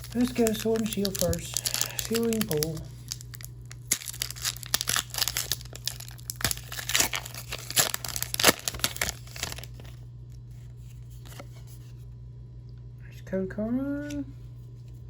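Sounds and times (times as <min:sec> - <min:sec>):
foil wrapper crinkling and tearing: 0:00.0 - 0:10.0.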